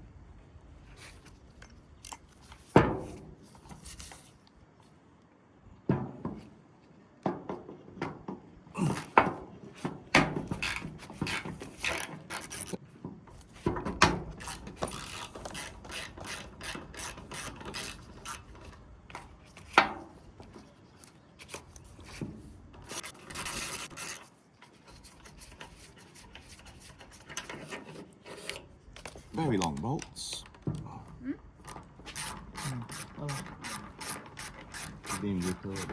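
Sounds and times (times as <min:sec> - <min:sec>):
hand tools clicking and scraping: 0:07.4 - 0:31.0, 0:31.6 - 0:35.9.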